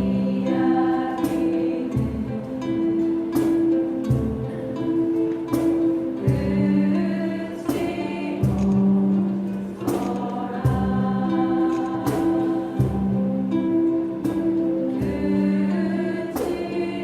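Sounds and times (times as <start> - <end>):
musical accompaniment: 0.0 - 17.0
voices singing in chorus: 0.0 - 17.0.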